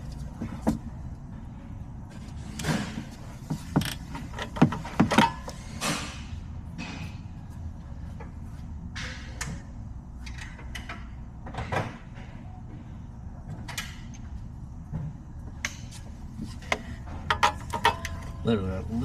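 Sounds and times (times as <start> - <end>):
low steady hum: 0.0 - 19.0
metal tools clinking and scraping: 17.3 - 18.7.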